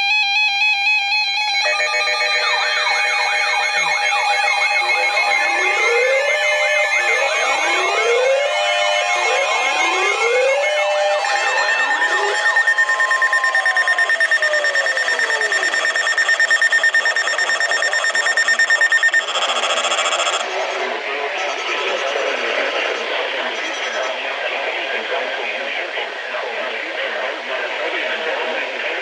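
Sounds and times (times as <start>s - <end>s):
rising sweep alarm tones: 0.0s - 20.4s
steady high alarm tone: 0.0s - 20.4s
rapid pulsing beeps: 1.5s - 20.5s.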